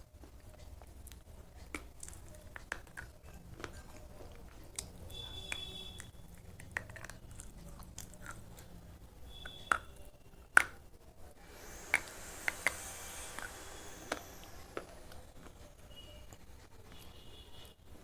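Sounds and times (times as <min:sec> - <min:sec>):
pencil being chewed with crunches: 0:01.1 - 0:04.9.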